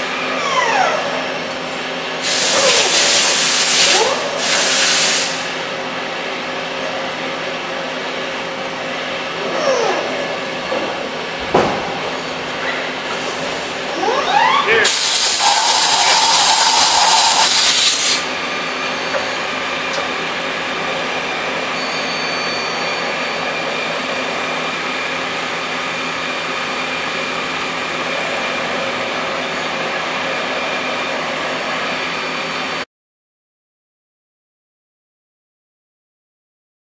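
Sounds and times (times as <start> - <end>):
machine whine: 0.0 - 4.5, 5.3 - 32.8
loud spraying hiss: 2.2 - 5.6, 14.8 - 18.3.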